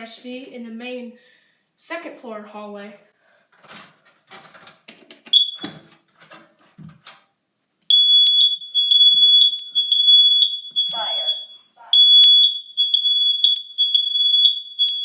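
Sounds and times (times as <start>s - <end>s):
alarm chirp: 5.4s - 5.8s, 7.9s - 15.0s
smoke alarm horn pulsing: 5.4s - 5.8s, 7.9s - 15.0s.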